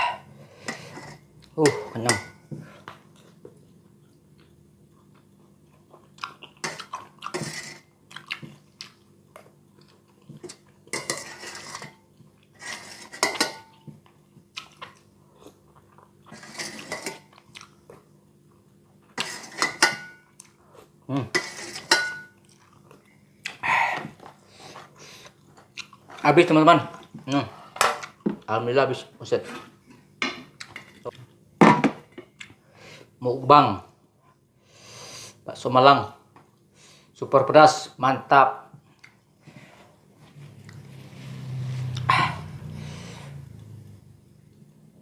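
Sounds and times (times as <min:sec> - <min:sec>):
cutlery clinking against a bowl: 0:10.4 - 0:12.0, 0:12.6 - 0:13.8, 0:19.2 - 0:20.3, 0:21.3 - 0:22.4.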